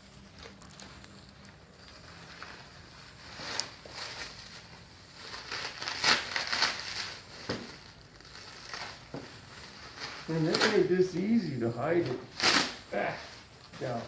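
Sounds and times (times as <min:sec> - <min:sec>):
packaging crinkling: 0:00.3 - 0:11.4.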